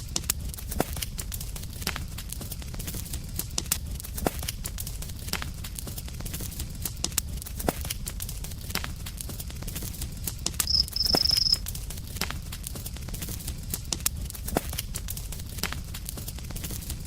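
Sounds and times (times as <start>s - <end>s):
campfire crackling and popping: 0.0s - 17.0s
high-pitched steady tone: 10.7s - 11.6s.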